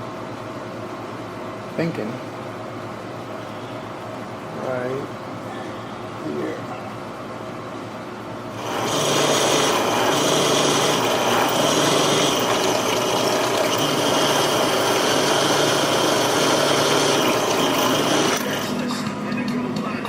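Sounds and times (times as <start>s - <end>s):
power tool motor whining: 8.6s - 18.7s.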